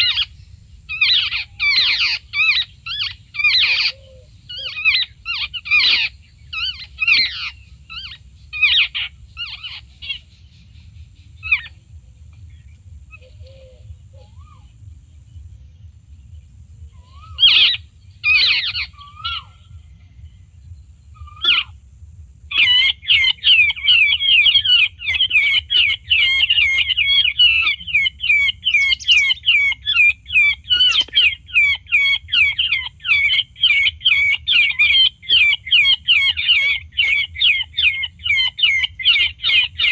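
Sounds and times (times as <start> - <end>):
babblers chattering calls: 22.5 - 39.9.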